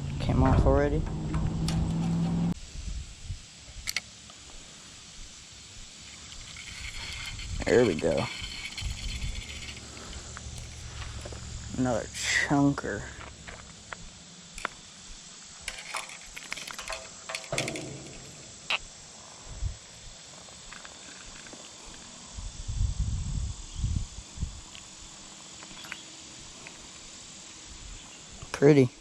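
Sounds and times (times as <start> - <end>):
insects droning: 0.0 - 29.0
low loud thumps: 0.2 - 2.4
handling clicks and rustles: 15.5 - 18.8.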